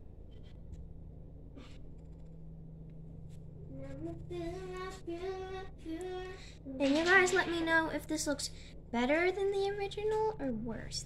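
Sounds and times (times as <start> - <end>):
low steady hum: 0.0 - 11.0
girl singing held notes: 3.7 - 7.0.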